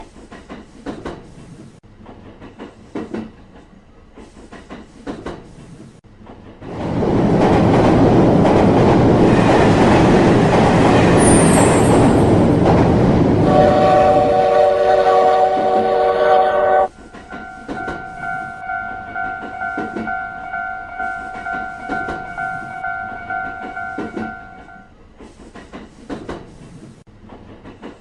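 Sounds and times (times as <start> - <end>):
train wheel clacks: 0.0 - 13.5, 16.9 - 28.0
train rushing past: 4.3 - 28.0
train horn: 13.4 - 24.9.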